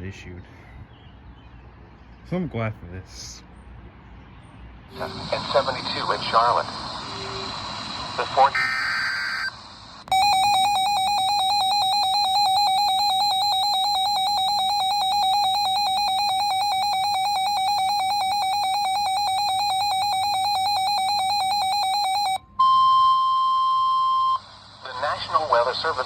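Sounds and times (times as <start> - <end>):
buzzy warbling alarm tone: 8.3 - 24.4
steady single-pitch alert tone: 8.4 - 24.4.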